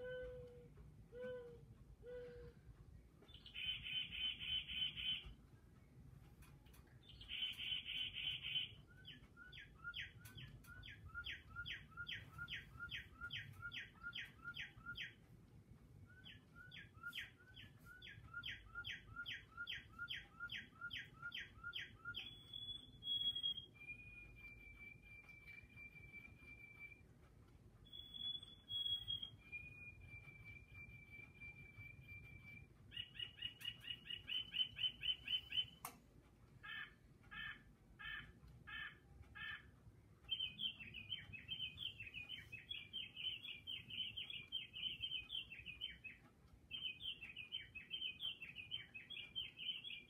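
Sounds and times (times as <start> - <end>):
bird chattering and whistling: 3.3 - 5.4, 7.0 - 15.2, 16.1 - 26.3, 27.8 - 35.8, 40.3 - 50.0.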